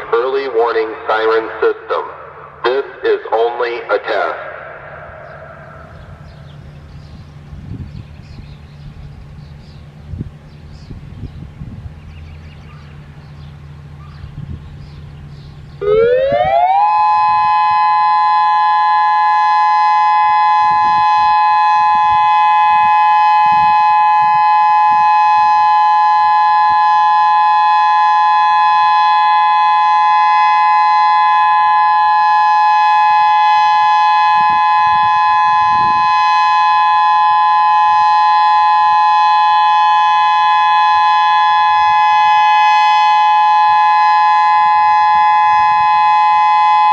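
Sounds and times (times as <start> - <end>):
two-note warning siren: 15.8 - 46.9.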